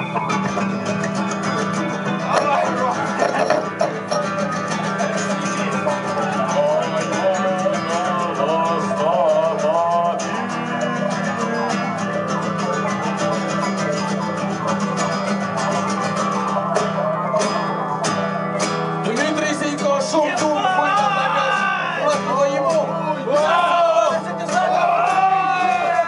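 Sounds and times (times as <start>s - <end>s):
wavering melodic line: 0.0s - 20.3s
guitar strumming: 0.0s - 26.0s.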